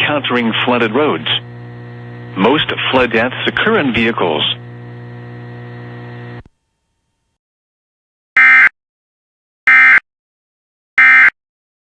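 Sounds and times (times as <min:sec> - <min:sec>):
hum with static: 0:00.0 - 0:07.4.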